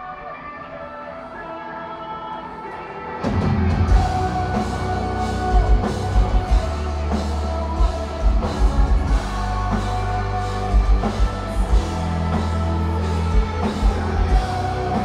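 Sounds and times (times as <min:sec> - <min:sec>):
drums: 0:00.0 - 0:15.0
distorted guitars and bass: 0:03.1 - 0:15.0.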